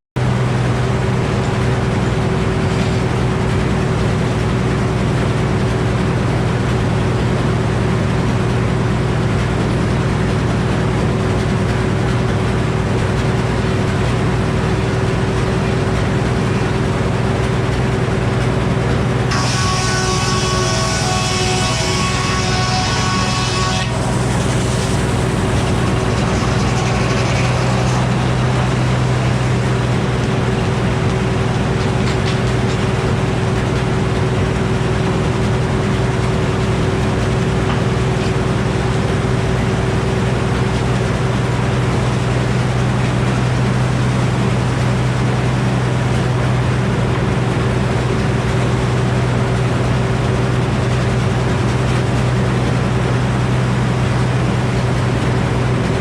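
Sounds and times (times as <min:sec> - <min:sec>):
sawmill engine humming: 0:00.2 - 0:56.0.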